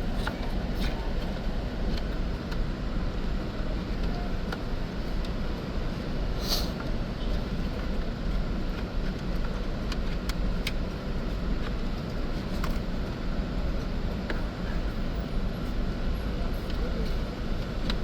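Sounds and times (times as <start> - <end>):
low rumble of car: 0.0 - 18.0.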